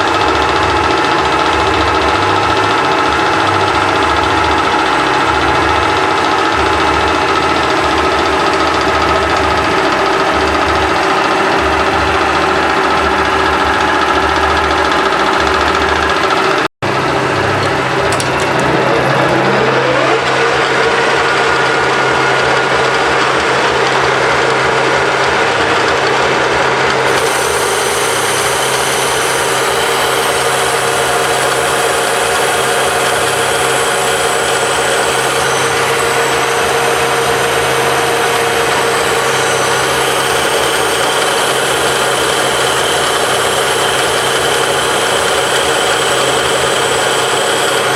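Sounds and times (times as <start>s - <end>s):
metal lathe humming and whining: 0.0s - 47.9s.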